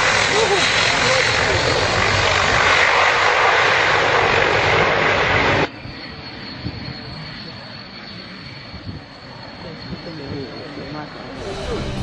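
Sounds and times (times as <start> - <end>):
aircraft engine noise: 0.0 - 12.0.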